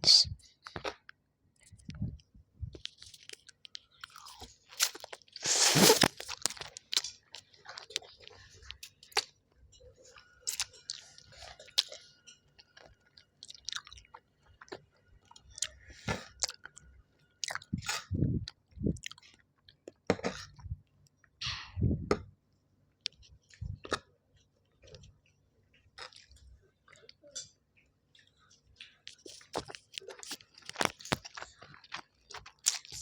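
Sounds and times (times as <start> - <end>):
person chewing and biting food: 1.6 - 9.4, 10.4 - 12.0, 12.6 - 16.8, 17.4 - 20.6, 25.9 - 26.4, 28.8 - 33.0.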